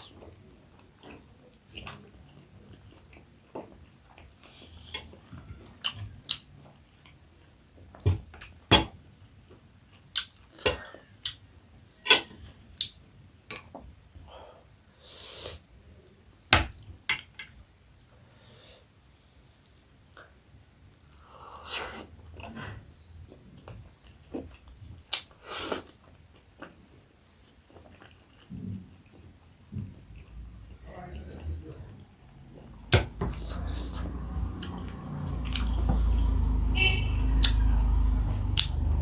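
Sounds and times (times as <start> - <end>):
chewing and mouth smacks: 9.9 - 11.4, 23.6 - 30.8, 31.4 - 36.4.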